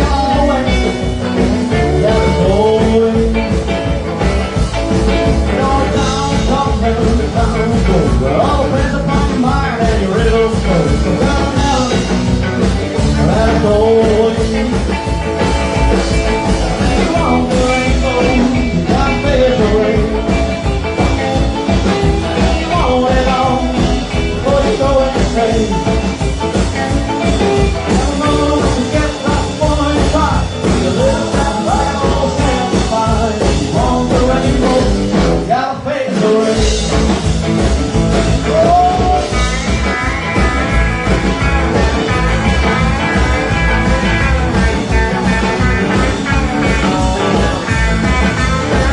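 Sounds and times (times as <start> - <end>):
person singing: 0.0 - 3.7, 5.2 - 21.2, 22.0 - 26.1, 27.4 - 37.2, 38.3 - 39.9
bass guitar: 0.0 - 48.9
drums: 0.0 - 48.9
electric guitar: 0.0 - 48.9.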